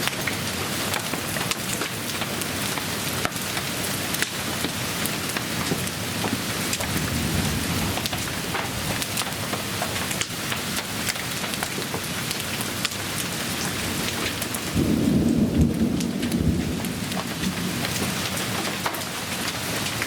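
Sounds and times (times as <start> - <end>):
rain and hail pelting: 0.0 - 20.0
low rumble of thunder: 6.8 - 9.3, 13.8 - 18.6.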